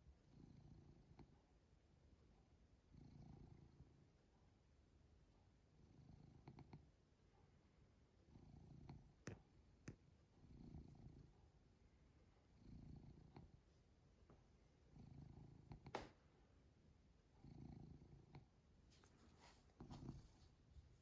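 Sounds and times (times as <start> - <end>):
cat purring softly: 0.0 - 1.6, 2.3 - 4.6, 5.5 - 7.1, 8.0 - 13.9, 14.7 - 15.9, 17.2 - 21.0.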